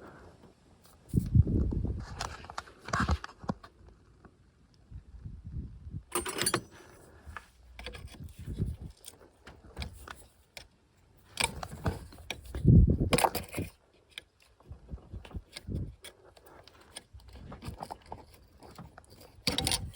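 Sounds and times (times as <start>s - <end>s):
metal tools clinking and rattling: 6.1s - 10.3s, 15.2s - 19.9s.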